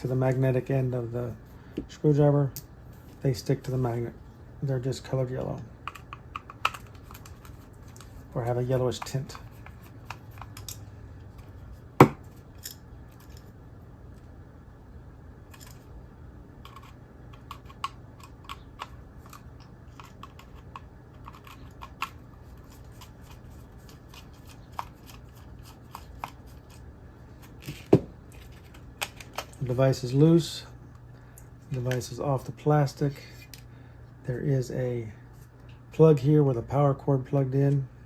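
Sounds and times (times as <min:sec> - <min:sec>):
steady low hum: 0:00.0 - 0:38.0
screwdriver clicking and scraping: 0:16.6 - 0:26.8.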